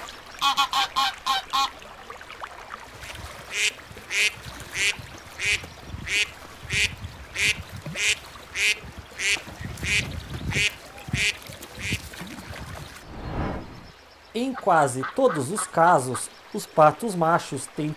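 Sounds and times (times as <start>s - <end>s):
duck quacking: 0.4s - 1.7s, 3.5s - 12.0s.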